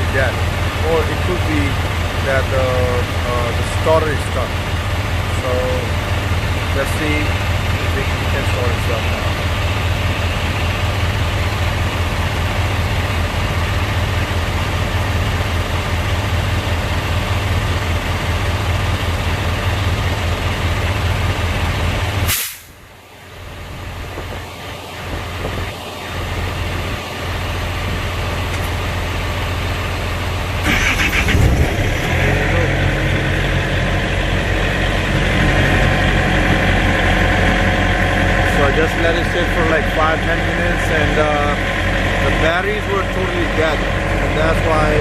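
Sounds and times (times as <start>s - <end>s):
loud running noise: 0.0s - 22.3s, 23.2s - 45.0s
diesel engine idling: 0.0s - 45.0s
short sharp burst: 22.3s - 22.8s.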